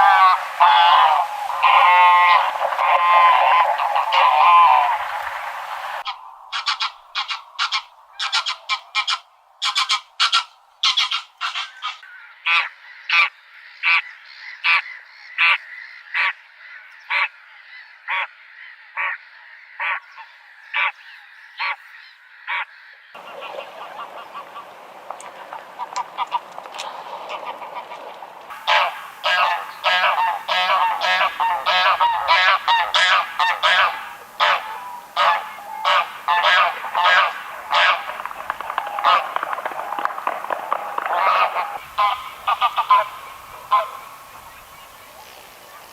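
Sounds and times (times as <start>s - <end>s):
goose honking: 0.0s - 13.3s, 23.2s - 45.9s.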